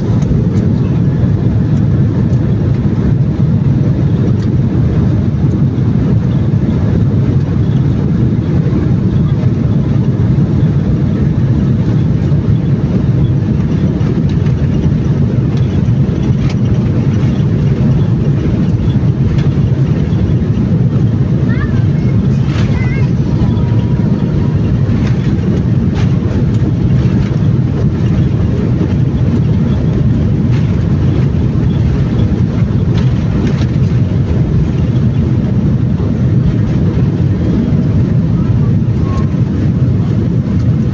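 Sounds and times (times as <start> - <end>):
airliner engine roar in cabin: 0.0 - 40.9
faint cabin rattles: 11.9 - 40.9.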